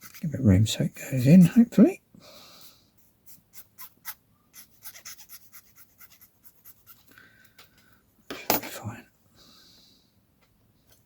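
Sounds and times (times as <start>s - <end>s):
hand tool scratching plastic: 0.0s - 0.3s.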